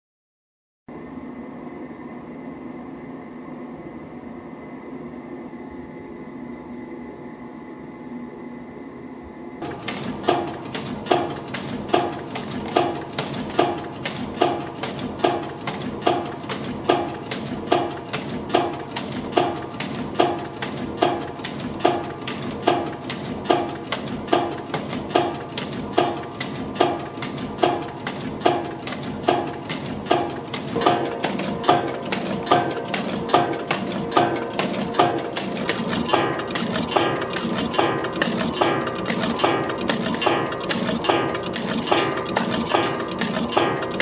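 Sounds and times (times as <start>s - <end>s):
rapid clicking: 9.6s - 44.0s
wire bending machine running: 9.6s - 44.0s.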